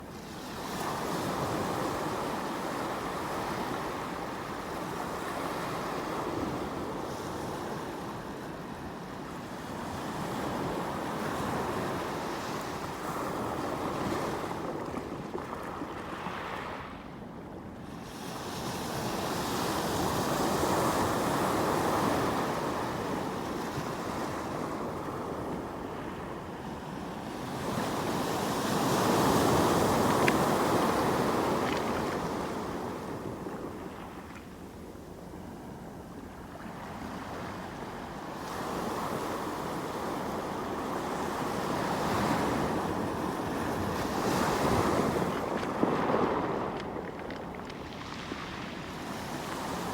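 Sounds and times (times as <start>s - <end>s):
sea waves washing on shore: 27.7s - 34.7s, 41.7s - 49.9s.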